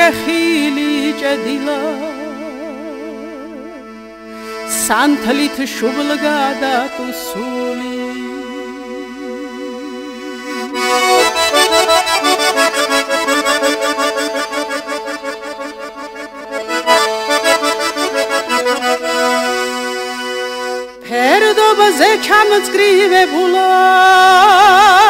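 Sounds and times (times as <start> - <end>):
person singing: 0.0 - 3.9, 4.7 - 16.0, 21.0 - 25.0
accordion folk tune: 0.0 - 25.0.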